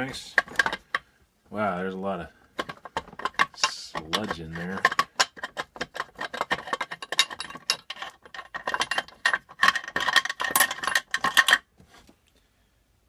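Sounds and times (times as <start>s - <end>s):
metal parts clinking: 0.3s - 1.0s, 2.6s - 11.6s.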